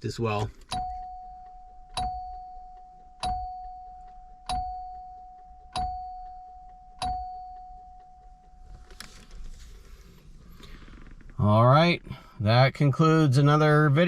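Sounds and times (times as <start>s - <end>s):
seatbelt warning chime: 0.0s - 9.4s.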